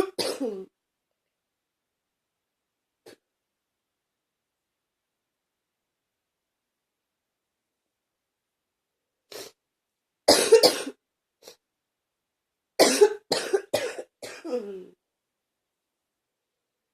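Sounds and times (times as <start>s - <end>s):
person coughing: 0.0s - 0.7s, 10.3s - 11.6s, 12.8s - 15.0s.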